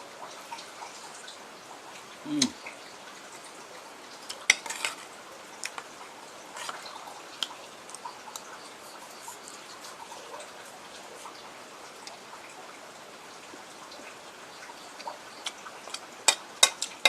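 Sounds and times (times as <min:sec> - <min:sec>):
cutlery clinking against dish: 0:15.9 - 0:17.0.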